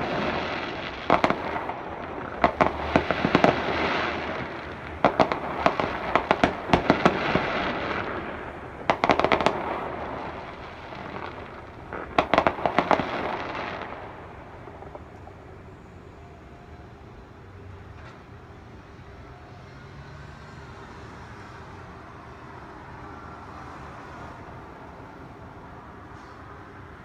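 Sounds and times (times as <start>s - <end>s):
fireworks bangs and crackling: 0.0s - 15.8s.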